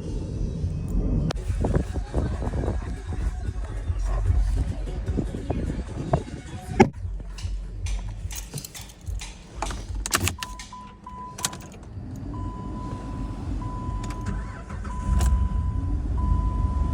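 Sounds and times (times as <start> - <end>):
low rumble: 0.0 - 16.9
keys jangling: 7.0 - 12.3.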